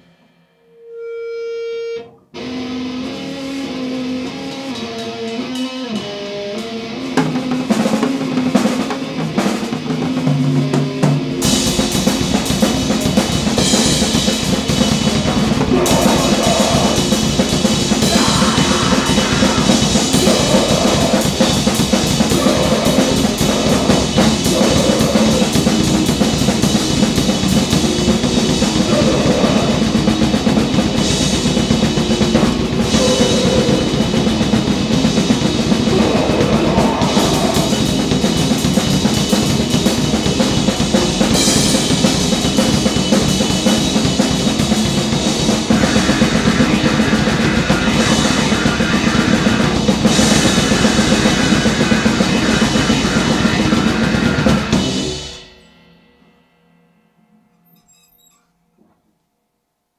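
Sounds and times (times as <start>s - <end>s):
drum kit hammering rapid strokes: 4.3s - 55.7s
dense wall of noise: 12.3s - 39.0s, 45.6s - 55.3s.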